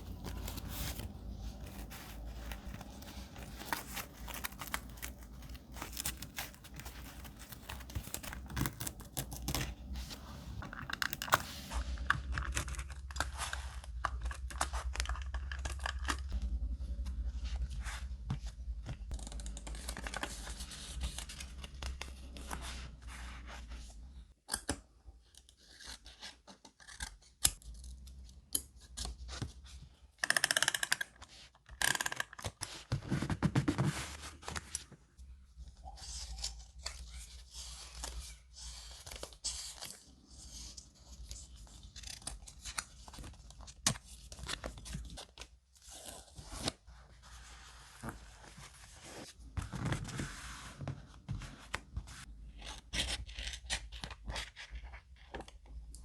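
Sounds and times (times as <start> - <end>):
paper rustling: 0.0 - 11.8
paper tearing: 0.0 - 11.8
scissors snipping paper: 0.0 - 11.8.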